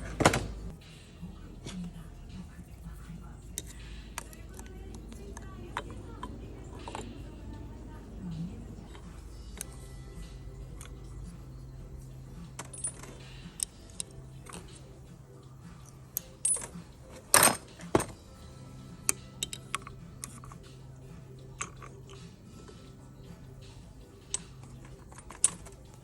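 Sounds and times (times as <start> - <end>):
small metal parts clinking: 3.5 - 7.7, 8.4 - 18.3, 19.0 - 26.0
metal clanks: 12.4 - 14.8, 15.8 - 18.2.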